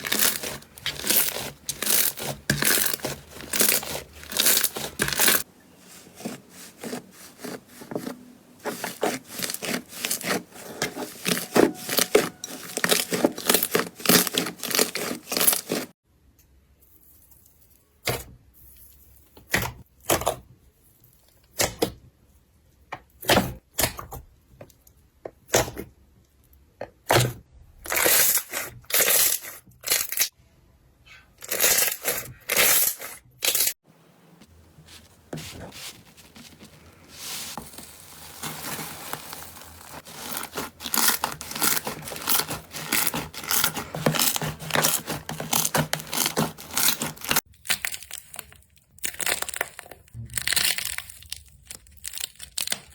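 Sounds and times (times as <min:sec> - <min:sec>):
slime crackling and popping: 0:00.0 - 0:05.5, 0:37.6 - 0:52.9.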